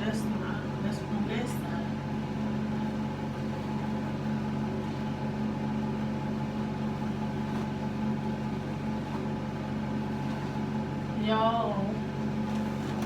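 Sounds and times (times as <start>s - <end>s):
air conditioner humming: 0.0s - 13.0s.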